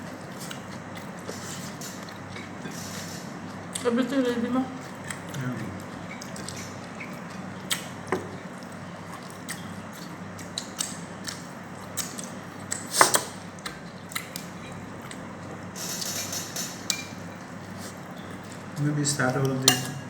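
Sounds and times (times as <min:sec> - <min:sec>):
steady low hum: 0:00.0 - 0:20.0
cutlery scraping against a plate: 0:15.8 - 0:18.0, 0:19.6 - 0:20.0.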